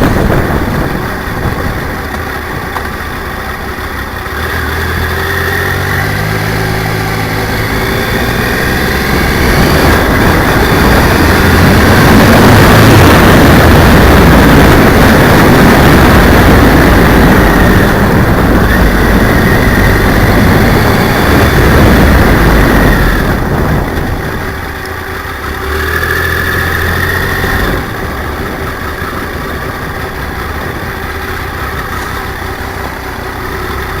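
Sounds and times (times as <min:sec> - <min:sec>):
wind rushing: 0:00.0 - 0:02.7, 0:04.9 - 0:24.8
motorcycle engine: 0:00.0 - 0:34.0.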